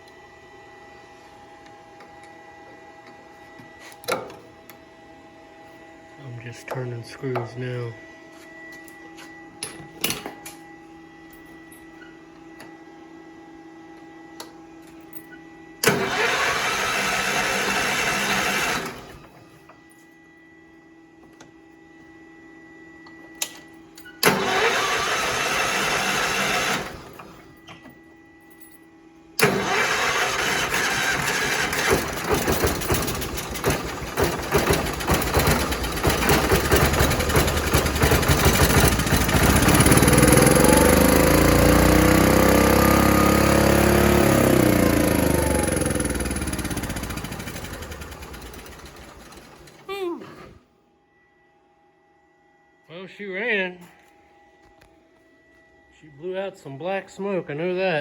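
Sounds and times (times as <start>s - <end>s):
engine starter cranking: 15.8s - 19.2s, 24.2s - 27.4s, 29.4s - 49.9s
tractor engine racing unevenly: 29.4s - 49.7s.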